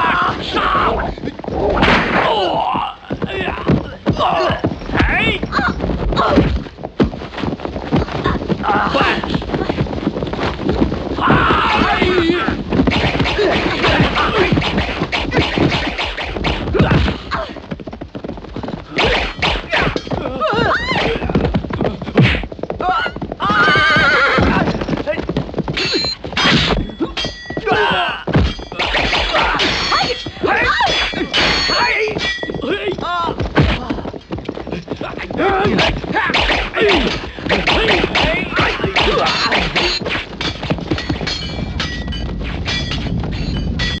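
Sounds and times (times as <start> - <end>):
fight strikes and blocks: 1.7 - 2.7, 11.3 - 17.3, 18.9 - 20.1, 25.8 - 32.2, 35.6 - 44.0.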